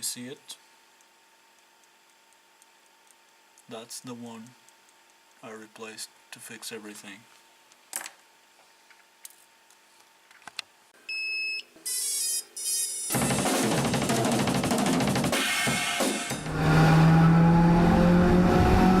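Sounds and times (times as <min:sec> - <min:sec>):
loud music with drums: 0:13.1 - 0:16.6.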